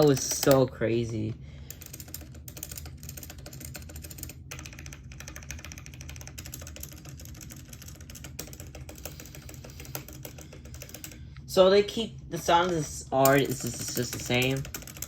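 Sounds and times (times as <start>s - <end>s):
fast muffled keyboard typing: 0.0s - 11.2s, 12.3s - 15.0s.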